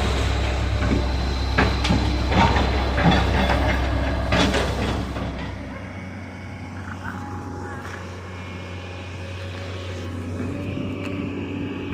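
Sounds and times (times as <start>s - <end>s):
knocks and rattling: 0.0s - 5.8s
excavator diesel engine drone: 0.0s - 11.9s.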